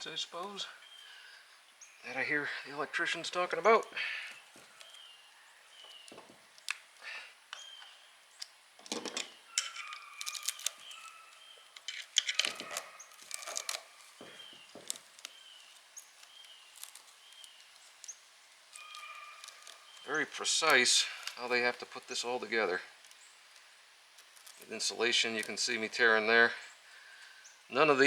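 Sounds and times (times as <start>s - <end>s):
insulation tearing: 2.1s - 28.0s
hands working on motor windings: 7.5s - 26.4s.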